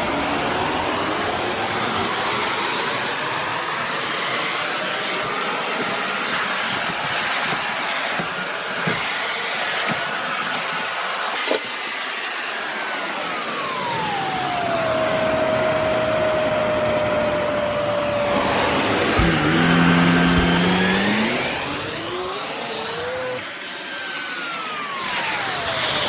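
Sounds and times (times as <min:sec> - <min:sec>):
vacuum cleaner running: 0:00.0 - 0:26.0.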